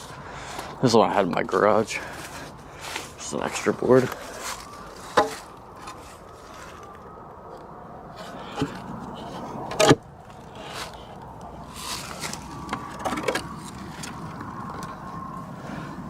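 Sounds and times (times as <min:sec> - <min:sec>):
steady background hum: 0:00.0 - 0:16.0.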